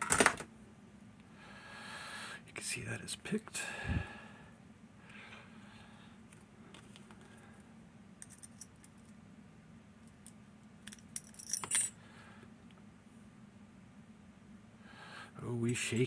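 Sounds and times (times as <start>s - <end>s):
metal jingle: 11.2s - 12.0s.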